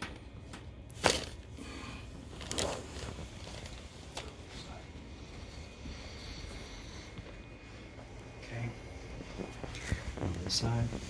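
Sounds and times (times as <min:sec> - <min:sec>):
soft rustle: 0:02.2 - 0:11.0.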